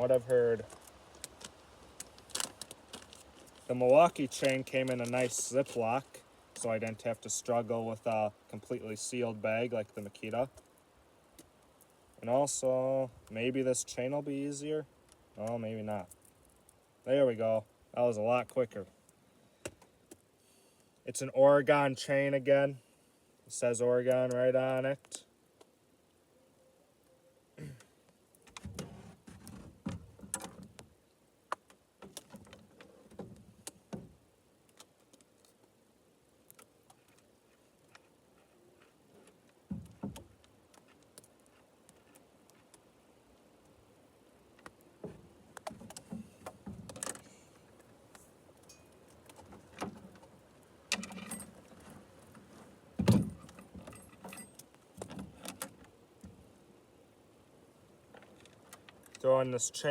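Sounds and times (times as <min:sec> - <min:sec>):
saw chain clinking and rattling: 0:53.8 - 0:54.7.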